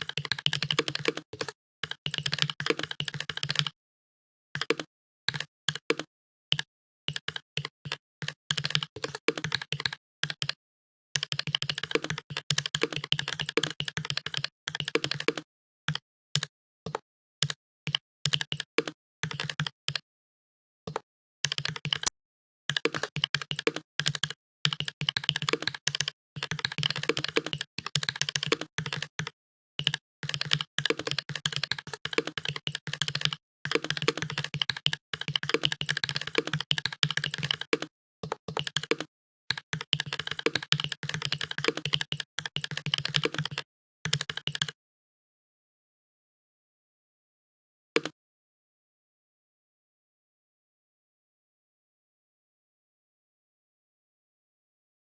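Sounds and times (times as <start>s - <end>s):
fast keyboard typing: 0.1s - 1.5s, 2.1s - 3.5s, 30.4s - 37.9s, 38.6s - 44.8s.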